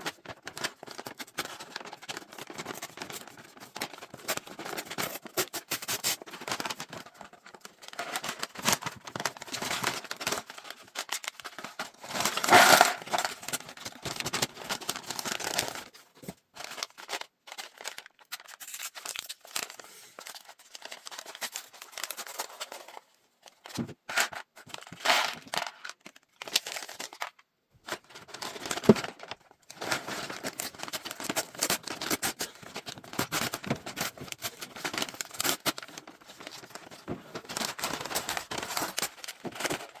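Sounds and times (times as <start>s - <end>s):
packaging tearing and crinkling: 8.0s - 15.9s, 16.6s - 22.7s, 28.3s - 40.0s.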